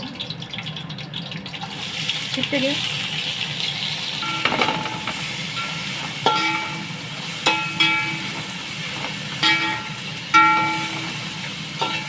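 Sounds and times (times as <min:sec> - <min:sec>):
onions sizzling in hot oil: 0:01.5 - 0:12.0
metal spoon knocking against pot: 0:04.2 - 0:05.2.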